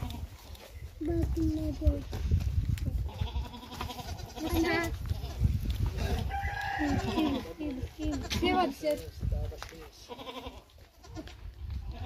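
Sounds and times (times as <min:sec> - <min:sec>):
goat kid bleating: 0:00.0 - 0:00.6, 0:02.9 - 0:08.8, 0:10.0 - 0:12.0
rooster crowing: 0:06.2 - 0:07.5.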